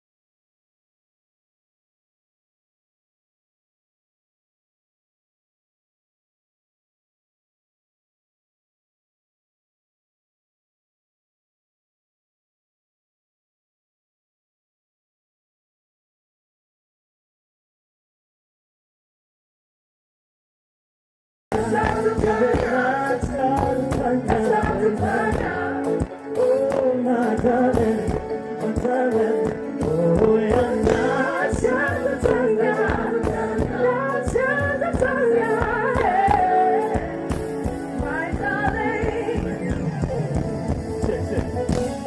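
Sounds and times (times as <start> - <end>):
song with singing: 21.5 - 42.0.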